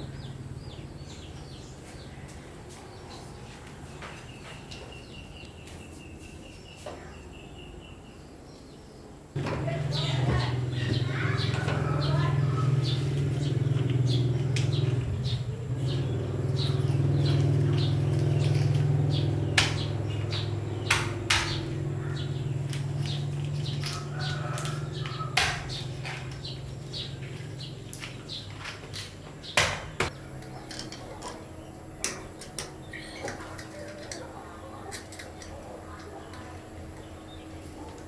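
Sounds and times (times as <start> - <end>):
small birds chirping: 0.0 - 38.0
steady low hum: 9.3 - 38.0
sharp knocks: 20.8 - 21.8.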